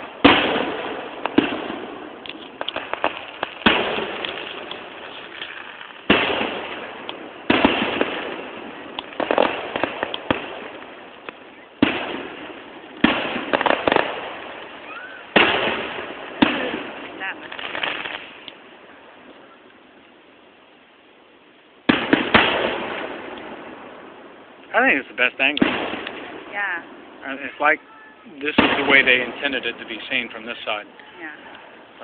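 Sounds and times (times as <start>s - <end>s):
crackling fireworks pops: 0.0s - 20.0s, 21.6s - 32.0s.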